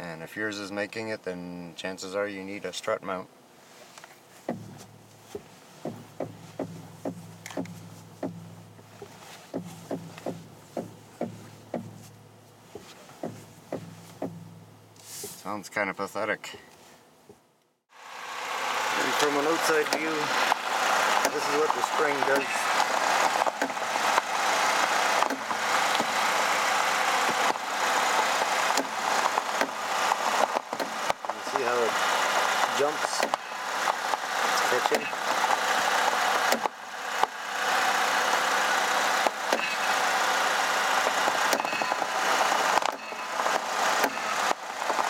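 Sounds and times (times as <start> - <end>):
steady low hum: 0.0 - 17.9
car engine idling: 3.3 - 15.6, 17.9 - 45.0
suspension clicks and knocks: 4.4 - 14.5, 19.1 - 37.4, 39.1 - 40.2, 40.9 - 45.0
strut mount clunks: 4.5 - 12.1, 12.7 - 14.6.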